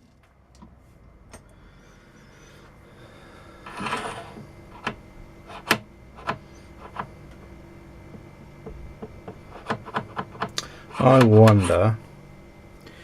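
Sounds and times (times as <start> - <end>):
faint steady hum: 0.0 - 13.0
scraping rustle: 3.7 - 4.4.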